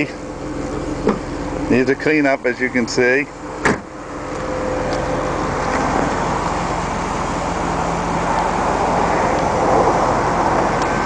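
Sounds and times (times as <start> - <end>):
car engine idling: 0.0 - 11.0
steady rushing noise: 3.8 - 11.0.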